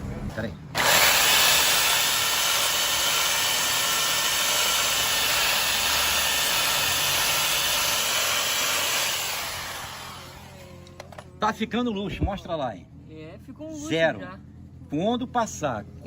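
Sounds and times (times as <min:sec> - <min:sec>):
electric drill sanding metal: 0:00.8 - 0:10.9.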